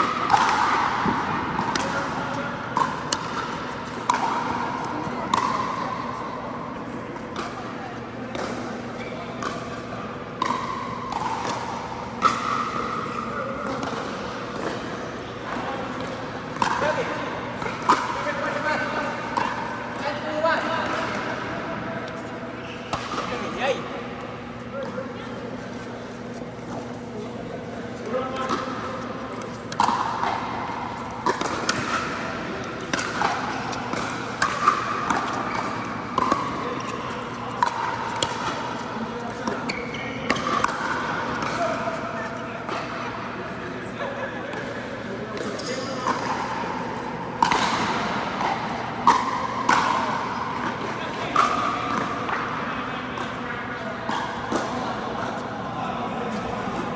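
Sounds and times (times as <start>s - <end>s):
shoes squeaking on court floor: 35.0s - 40.3s, 45.5s - 46.1s.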